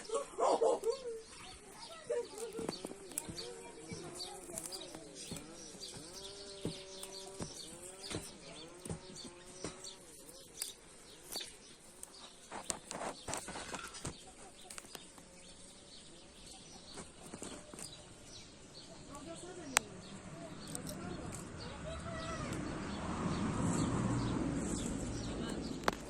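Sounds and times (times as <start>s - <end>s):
farm animals calling: 0.0s - 11.4s
small clicks and knocks: 2.2s - 15.3s
brief rustle: 10.1s - 15.2s.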